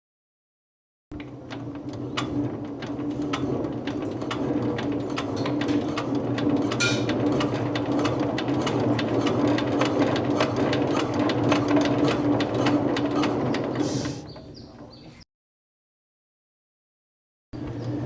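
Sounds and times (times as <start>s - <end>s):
diesel engine clattering: 1.2s - 15.0s.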